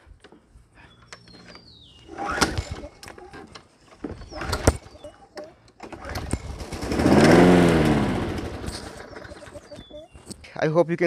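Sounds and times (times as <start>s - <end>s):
mower starter cord pulls: 1.1s - 9.8s.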